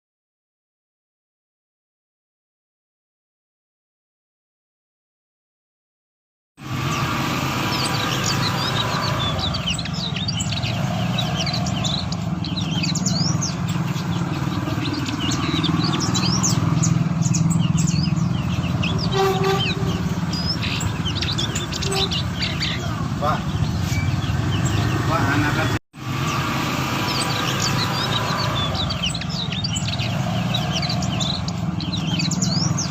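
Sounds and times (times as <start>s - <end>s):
bird chirps and whistles: 17.3s - 22.8s.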